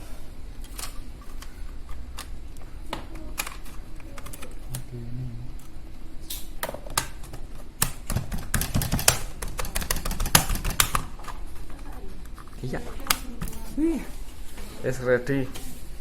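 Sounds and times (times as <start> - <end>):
laptop keys clicking: 7.0 - 11.4.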